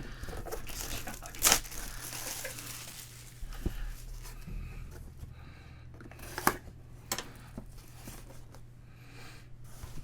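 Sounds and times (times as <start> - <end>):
trading cards and packaging handled: 0.2 - 4.4.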